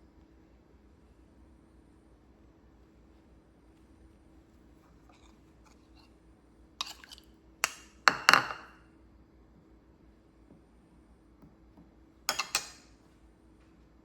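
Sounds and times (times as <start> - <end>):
dishes clinking: 6.8 - 8.8, 12.3 - 12.9.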